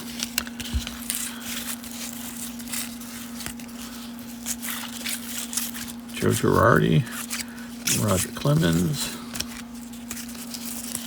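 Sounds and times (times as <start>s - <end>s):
foil wrappers rustling and crinkling: 0.0s - 11.0s
steady low hum: 0.0s - 11.0s.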